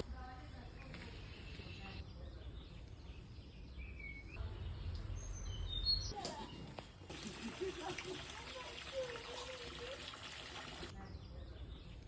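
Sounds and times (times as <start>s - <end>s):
bird calls and chirps: 0.7s - 6.8s.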